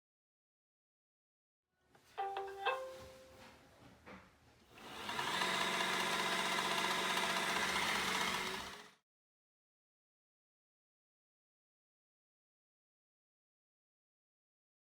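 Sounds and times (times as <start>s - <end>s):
robot vacuum motors whining: 4.7s - 9.0s
robot vacuum start-up tones: 4.8s - 9.0s.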